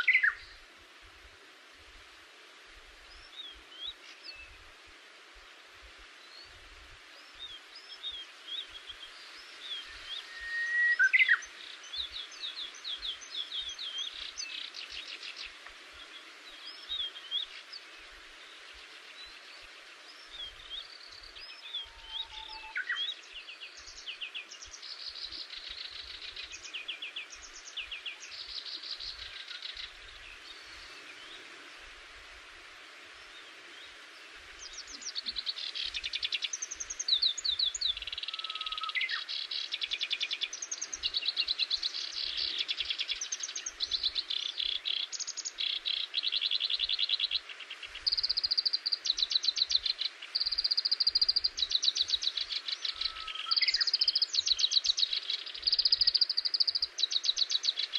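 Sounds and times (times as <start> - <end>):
songbirds trilling: 34.6 - 57.9.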